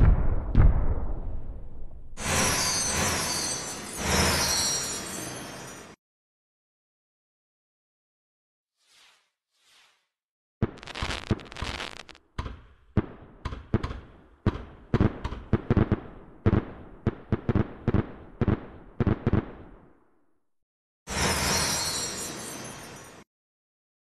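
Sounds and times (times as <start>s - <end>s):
firework crackling: 10.6s - 12.2s
firework bangs: 10.6s - 19.9s.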